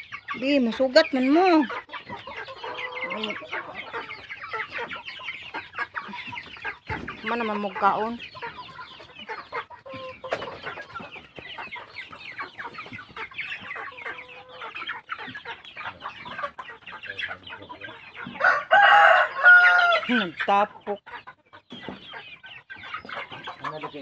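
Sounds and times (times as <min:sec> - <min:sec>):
chickens clucking: 0:00.0 - 0:24.0
rooster crowing: 0:18.4 - 0:20.0.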